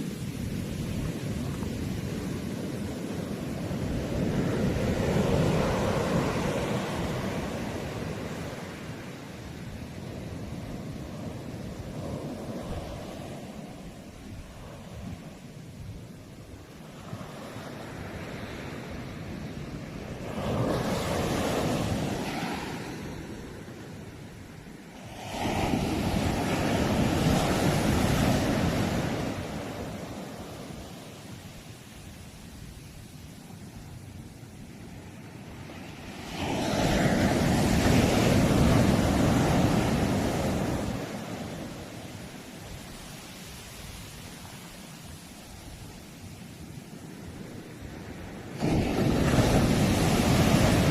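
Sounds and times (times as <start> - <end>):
sea waves breaking on shore: 0.0 - 50.9
sea wave breaking: 48.4 - 50.9.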